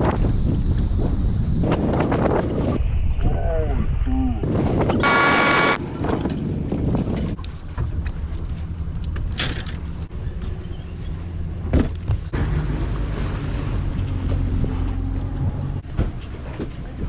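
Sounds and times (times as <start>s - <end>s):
wind on microphone: 0.0s - 5.1s
steady low hum: 4.5s - 5.8s
short buzzing tone: 5.0s - 5.8s.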